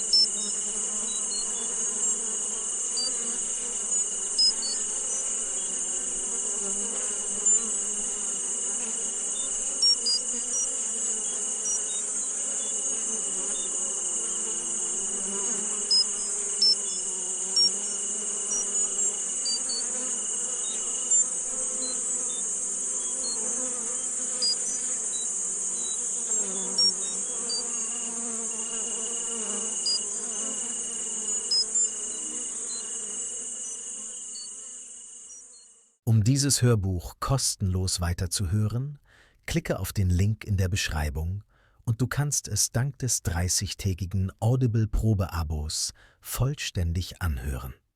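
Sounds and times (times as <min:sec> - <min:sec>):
insect buzzing hiss: 0:00.0 - 0:36.0
insect chirps: 0:00.0 - 0:36.0.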